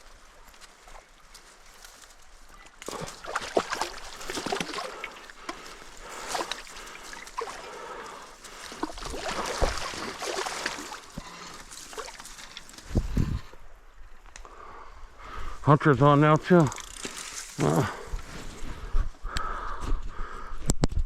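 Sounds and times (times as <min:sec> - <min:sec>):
creek water splashing: 0:00.0 - 0:14.1.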